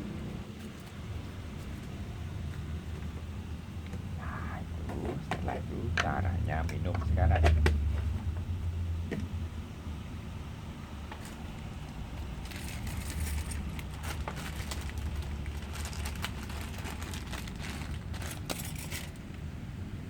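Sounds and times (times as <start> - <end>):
steady low hum: 0.0 - 20.0
small clicks and crackles: 11.1 - 19.4.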